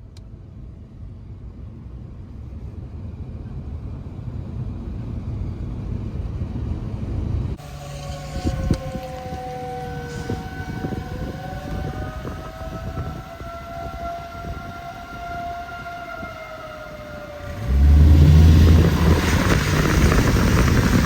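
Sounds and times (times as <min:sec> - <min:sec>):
tornado warning siren wailing: 0:07.6 - 0:21.0
loud low rumbling: 0:17.0 - 0:21.0.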